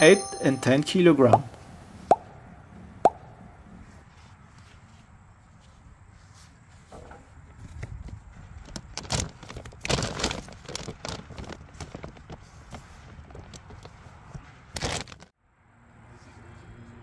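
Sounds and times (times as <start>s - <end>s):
rustling and crackling: 3.8s - 15.3s.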